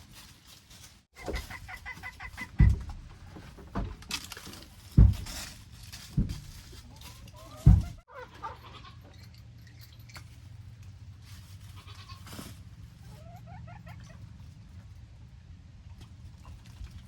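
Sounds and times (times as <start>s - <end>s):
goats bleating: 7.4s - 9.0s.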